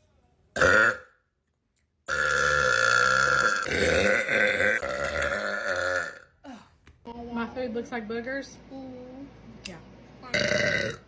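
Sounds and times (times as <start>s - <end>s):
woman burping: 0.6s - 1.1s, 2.1s - 6.6s, 10.3s - 11.0s.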